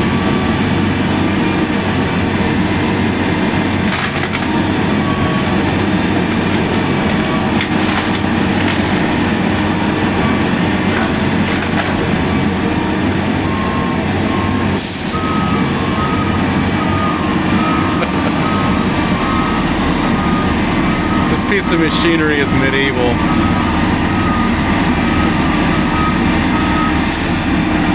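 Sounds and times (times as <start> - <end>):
heavy machine engine running: 0.0 - 27.9
wood cracking and splintering: 3.5 - 12.5.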